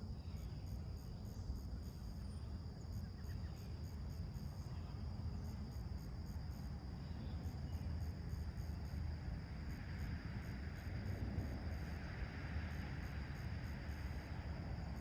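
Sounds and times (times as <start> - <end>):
insects trilling: 0.0 - 15.0
distant traffic rumble: 5.0 - 15.0
vehicle hiss approaching: 8.0 - 15.0.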